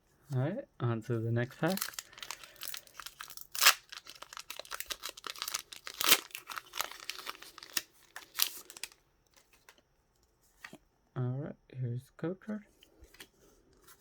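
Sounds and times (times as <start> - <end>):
foil wrapper tearing: 1.6 - 9.4.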